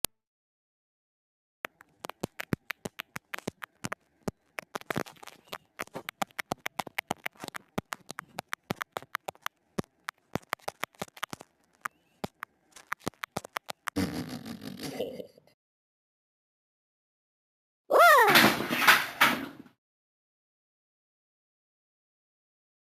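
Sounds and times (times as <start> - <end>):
rapid sharp clicking calls: 1.7 - 14.0.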